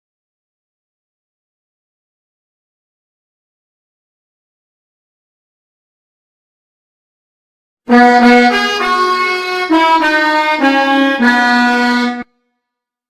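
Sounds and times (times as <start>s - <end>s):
melodica melody: 7.9s - 12.3s.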